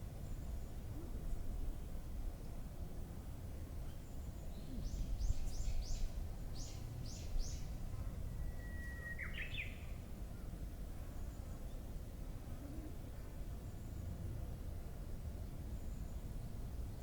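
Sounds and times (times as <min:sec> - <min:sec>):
bush warbler song: 0:04.0 - 0:07.8, 0:08.4 - 0:10.0.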